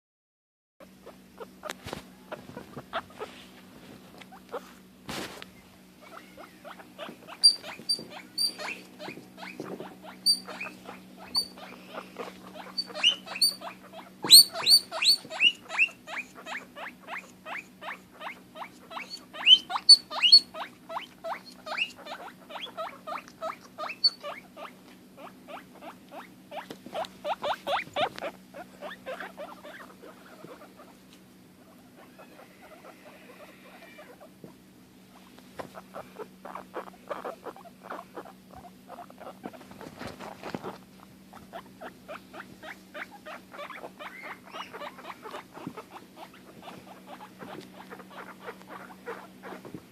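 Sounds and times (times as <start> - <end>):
guinea pig squeaking: 0.9 - 3.4, 5.5 - 49.8
guinea pig high whistles: 7.4 - 8.8, 9.4 - 11.6, 12.6 - 16.6, 19.0 - 22.0, 22.6 - 24.4, 44.0 - 44.9.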